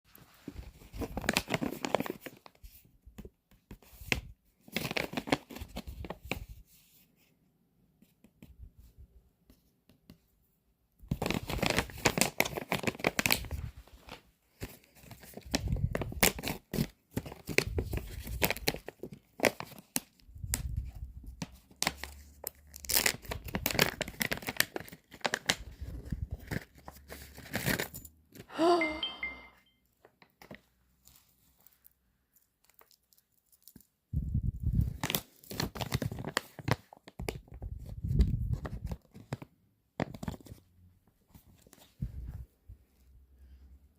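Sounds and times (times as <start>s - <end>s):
packaging tearing and crinkling: 15.0s - 20.7s, 21.8s - 27.9s, 34.7s - 37.5s.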